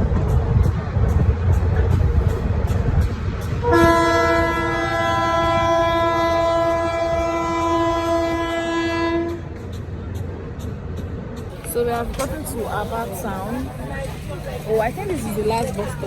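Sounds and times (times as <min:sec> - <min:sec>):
train rumbling on rails: 0:00.0 - 0:16.0
locomotive horn blast: 0:03.6 - 0:09.5.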